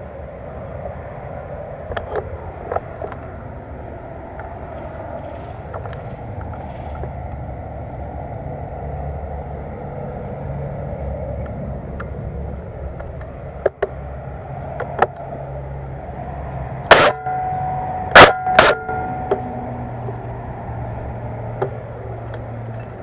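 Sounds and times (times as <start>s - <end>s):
wind rumble: 0.0s - 23.0s
loud crack: 16.9s - 17.4s, 18.1s - 19.5s.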